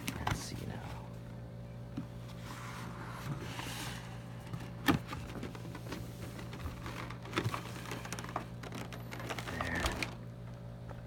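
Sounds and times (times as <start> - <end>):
steady low hum: 0.0 - 11.0
plastic toy handling rustle and knocks: 4.4 - 10.6.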